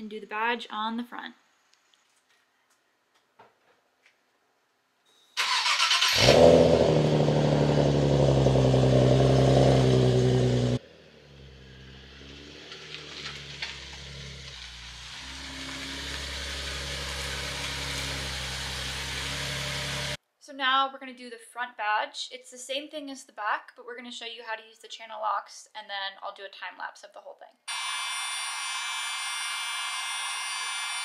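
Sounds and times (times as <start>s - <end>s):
car engine cranking and starting: 5.4s - 20.2s
car engine idling: 5.5s - 20.2s.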